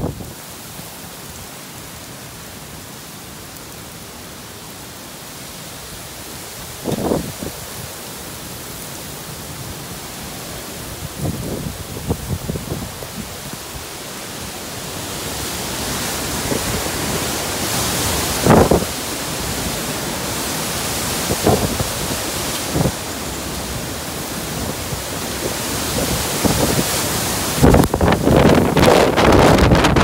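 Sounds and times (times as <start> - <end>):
wind and rain rushing: 0.0 - 30.0
wind gusts buffeting microphone: 6.8 - 7.8, 16.3 - 19.0, 21.0 - 23.6, 24.2 - 30.0.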